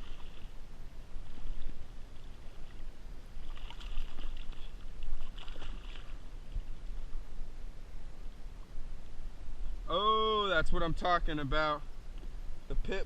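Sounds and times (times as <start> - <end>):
water sloshing: 0.0 - 7.3
wind rumbling on microphone: 0.0 - 9.9.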